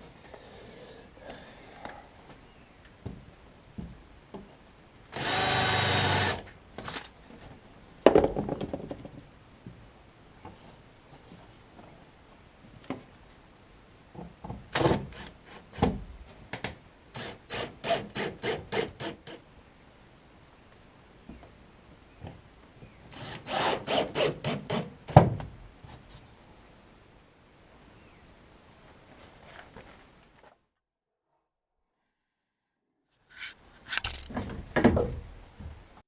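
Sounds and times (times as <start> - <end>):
hand saw cutting wood: 17.2 - 19.4, 23.2 - 24.9.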